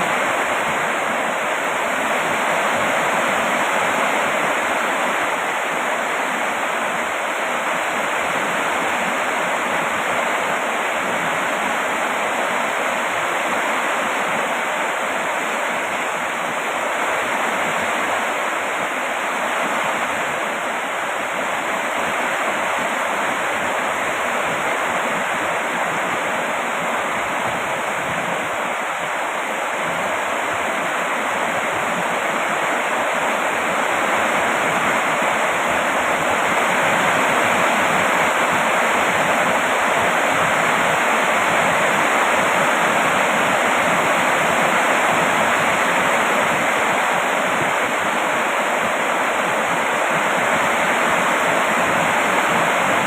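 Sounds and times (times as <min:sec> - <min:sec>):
heavy rain hissing: 0:00.0 - 0:53.0.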